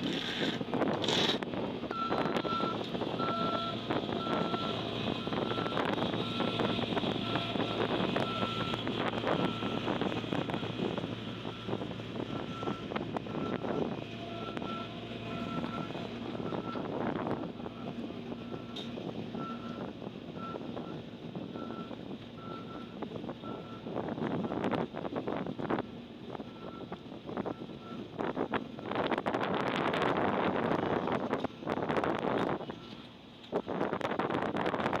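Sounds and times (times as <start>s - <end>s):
wind on microphone: 0.0s - 32.8s
diesel engine running: 0.0s - 35.0s
reversing alarm beeps: 1.9s - 10.8s, 11.4s - 18.8s.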